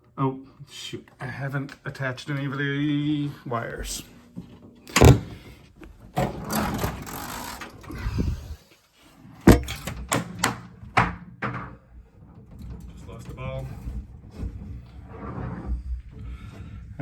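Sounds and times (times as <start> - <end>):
hard parts knocking together: 9.5 - 12.0
scraping and rustling: 11.5 - 17.0.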